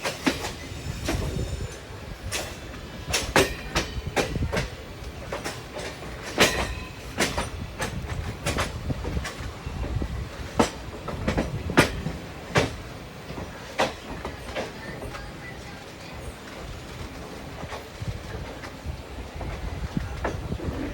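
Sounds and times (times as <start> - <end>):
train wheels knocking over rail joints: 0.0 - 15.4
low train rumble: 0.0 - 20.9.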